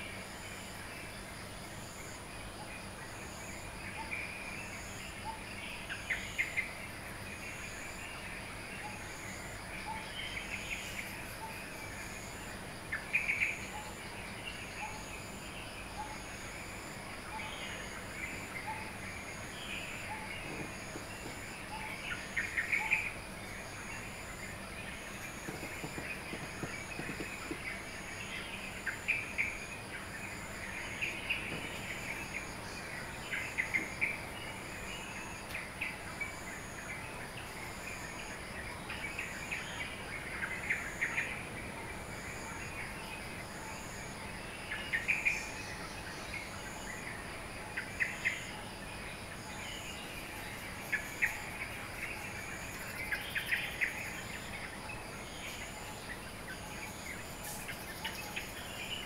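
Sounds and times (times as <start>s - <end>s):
high insect drone: 0.0s - 59.0s
high insect pulse: 6.1s - 37.0s
birds chirping: 17.4s - 36.3s.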